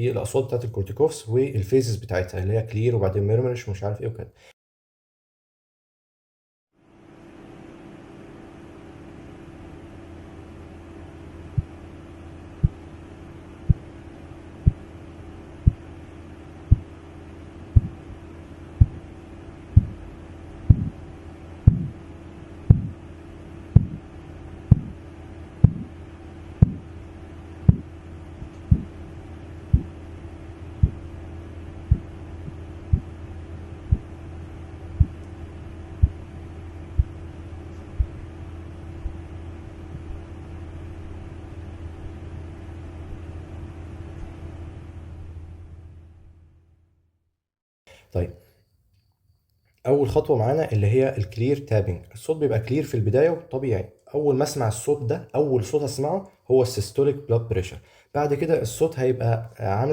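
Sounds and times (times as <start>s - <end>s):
steady hum: 6.9s - 46.5s
low pulse taps: 11.6s - 11.8s, 12.6s - 12.9s, 13.6s - 13.9s, 14.6s - 14.9s, 15.6s - 15.9s, 16.7s - 17.0s, 17.7s - 19.1s, 19.7s - 21.0s, 21.6s - 22.0s, 22.7s - 23.0s, 23.7s - 26.0s, 26.6s - 26.9s, 27.6s - 29.0s, 29.7s - 30.0s, 30.7s - 31.1s, 31.8s - 33.2s, 33.8s - 34.2s, 35.0s - 35.3s, 36.0s - 38.3s, 39.0s - 40.3s.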